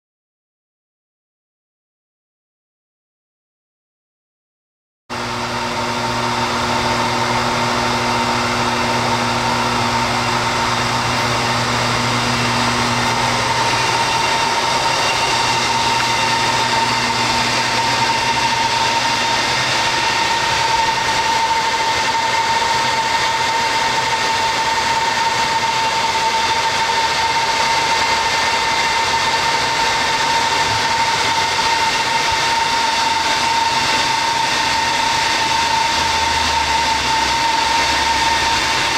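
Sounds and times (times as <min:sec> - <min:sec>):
industrial machine high whine: 0:05.1 - 0:38.9
low hum: 0:05.2 - 0:23.4.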